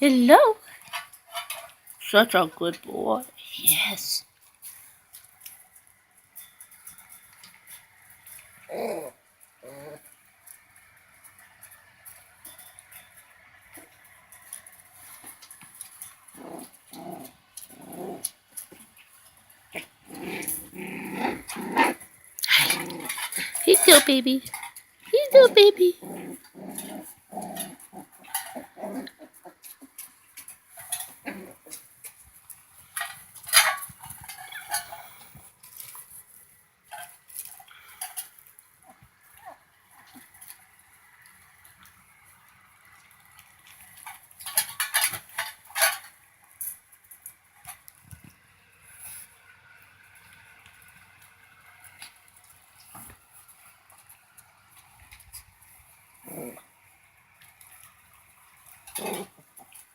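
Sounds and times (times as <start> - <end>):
puppies growling and whining: 8.6 - 10.2, 16.3 - 18.8, 19.7 - 24.2, 25.2 - 30.1, 30.8 - 31.9, 56.2 - 56.7, 58.9 - 59.8.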